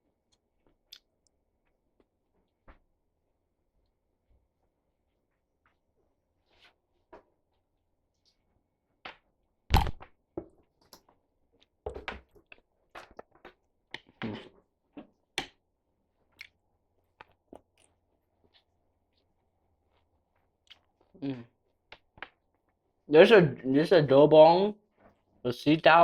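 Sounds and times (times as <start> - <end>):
wet chewing: 16.3 - 19.3, 19.9 - 21.1.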